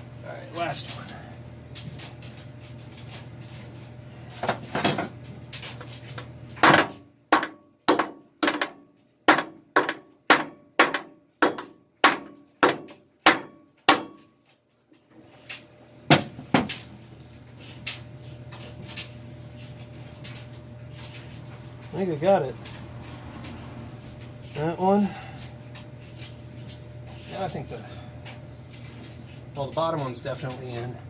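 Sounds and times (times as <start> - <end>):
hammer striking metal: 6.6 - 14.2.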